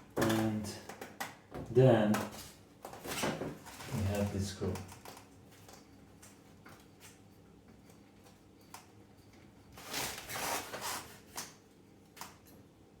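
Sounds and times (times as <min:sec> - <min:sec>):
rustling and scraping: 0:09.7 - 0:11.4.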